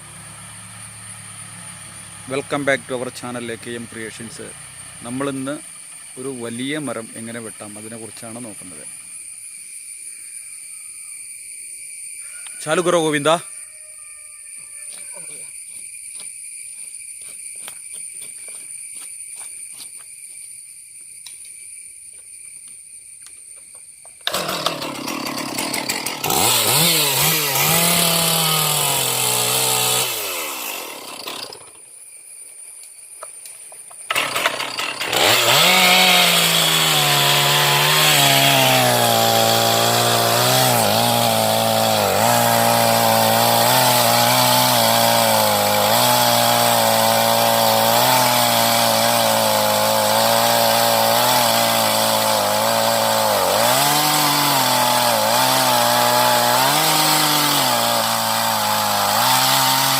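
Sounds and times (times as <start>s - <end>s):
chainsaw revving and cutting: 0.0s - 9.0s, 24.2s - 31.8s, 34.1s - 59.9s.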